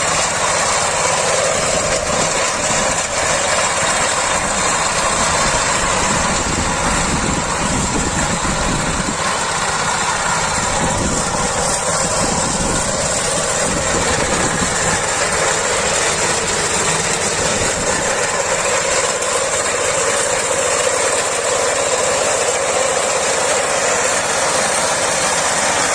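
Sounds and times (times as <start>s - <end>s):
harvesting machine engine running: 0.0s - 25.9s.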